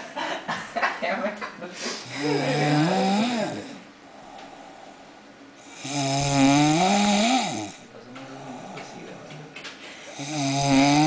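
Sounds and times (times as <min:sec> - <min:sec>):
person snoring: 0:02.0 - 0:09.0, 0:10.1 - 0:11.0.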